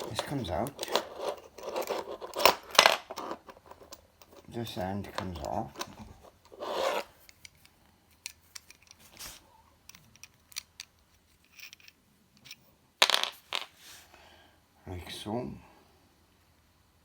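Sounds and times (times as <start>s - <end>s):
small metal clicks and scrapes: 0.0s - 12.7s.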